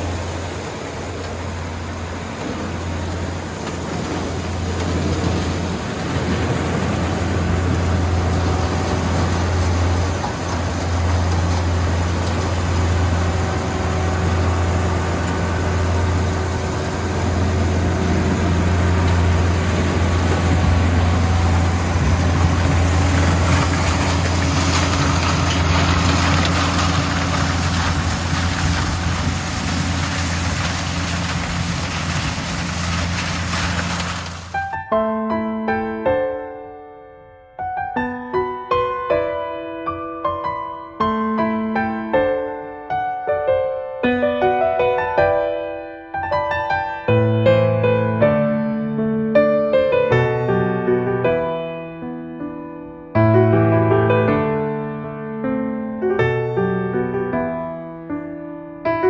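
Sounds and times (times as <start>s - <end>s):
harvester engine droning: 0.0s - 34.7s.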